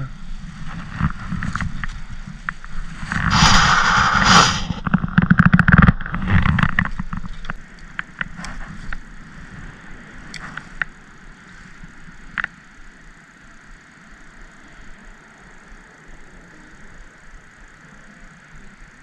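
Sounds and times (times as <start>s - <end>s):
wind buffeting microphone: 0.0s - 10.4s
rushing scraping noise: 0.4s - 7.6s
scattered clicks: 12.3s - 12.6s.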